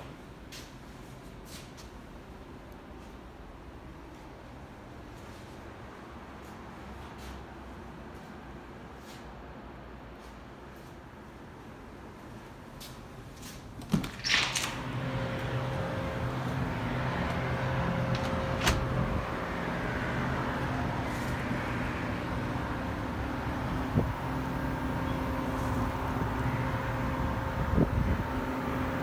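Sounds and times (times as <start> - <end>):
heat pump running hum: 10.6 - 29.0.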